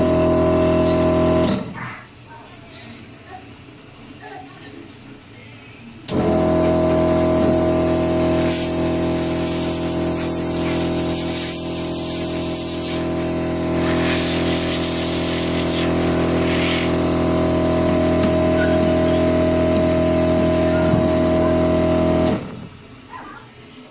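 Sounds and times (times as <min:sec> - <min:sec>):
motor running: 0:00.0 - 0:01.6, 0:06.1 - 0:22.7
rushing hiss of air: 0:07.7 - 0:17.0.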